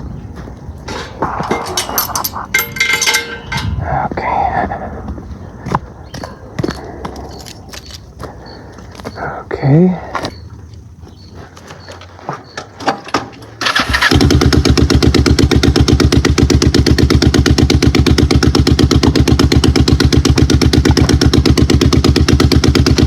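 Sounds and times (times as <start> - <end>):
motorcycle engine idling: 0.1 - 9.4, 13.5 - 23.0
starter cranking: 0.9 - 4.0, 13.6 - 15.1.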